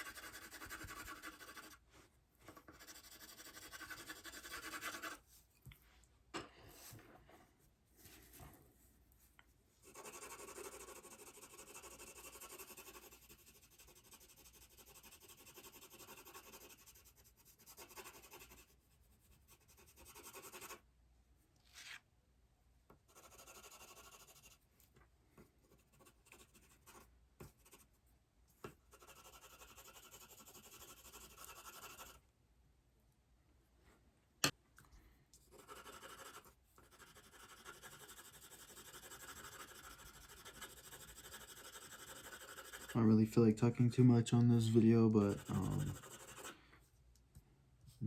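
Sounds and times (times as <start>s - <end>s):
pencil scratching on paper: 0.0s - 1.9s, 2.5s - 5.4s, 9.8s - 20.8s, 23.0s - 24.7s, 25.4s - 28.0s, 28.6s - 32.2s, 35.4s - 43.2s, 44.5s - 46.6s.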